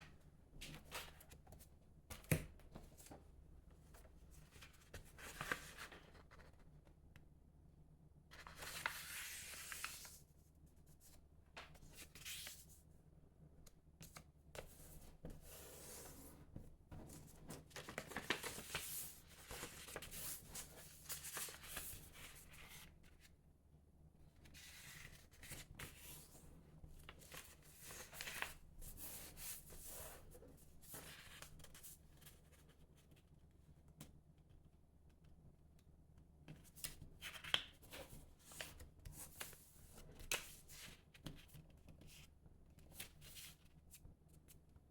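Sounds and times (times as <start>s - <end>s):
paper rustling and creasing: 4.6s - 6.6s, 8.3s - 10.2s, 17.1s - 22.8s.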